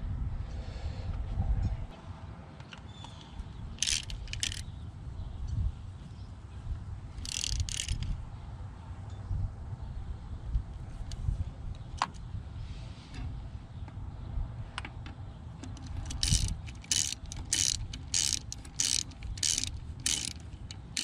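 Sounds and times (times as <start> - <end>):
ratchet wrench clicking: 3.8 - 4.6, 7.2 - 8.1, 15.8 - 21.0
tools clinking: 3.8 - 4.6, 7.2 - 8.0, 15.7 - 21.0.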